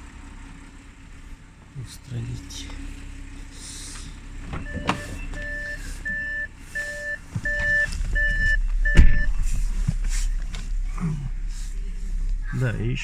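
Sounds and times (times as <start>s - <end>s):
low vehicle engine rumble: 0.0s - 13.0s
electronic warning beeps: 4.5s - 9.4s.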